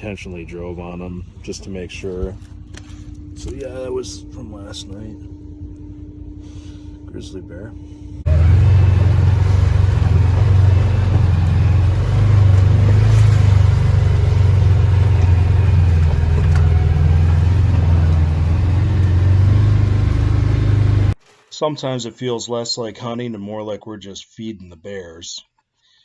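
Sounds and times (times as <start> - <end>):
atv engine running: 8.2 - 21.2.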